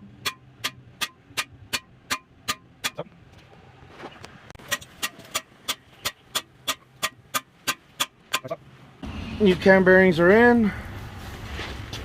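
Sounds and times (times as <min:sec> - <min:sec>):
hammer tapping on metal: 0:00.2 - 0:03.1, 0:04.6 - 0:08.6.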